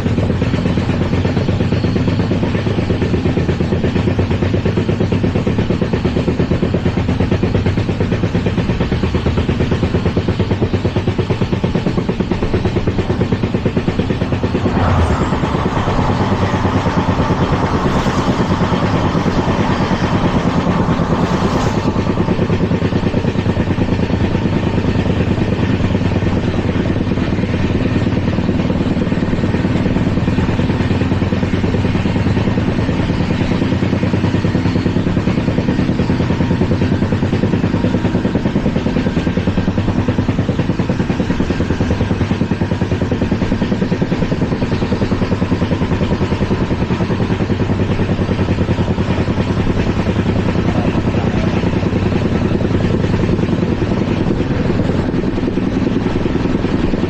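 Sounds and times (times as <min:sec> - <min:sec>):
train wheels rumbling on track: 0:00.0 - 0:57.0
high rushing noise: 0:12.0 - 0:24.5.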